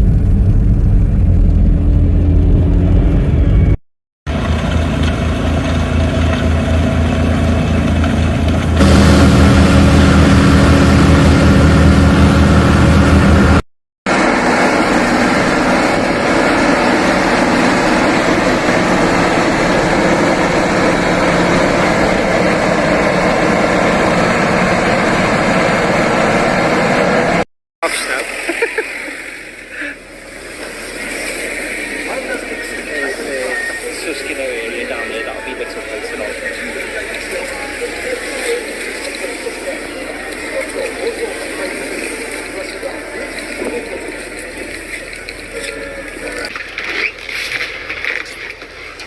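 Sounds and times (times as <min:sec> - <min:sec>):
low engine hum: 0:00.0 - 0:27.5
steady rushing noise: 0:08.4 - 0:27.4.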